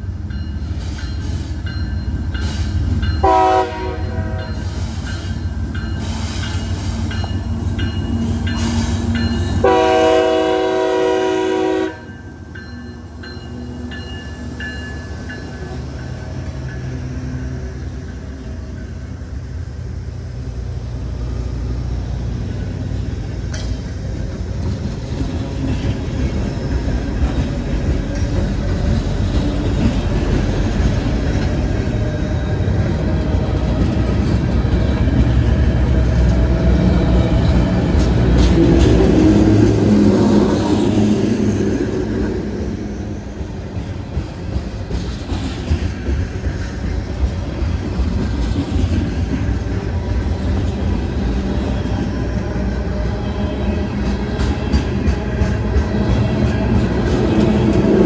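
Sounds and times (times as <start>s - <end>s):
train rumble: 0.0s - 58.0s
locomotive air horn: 3.2s - 4.6s, 9.6s - 12.1s.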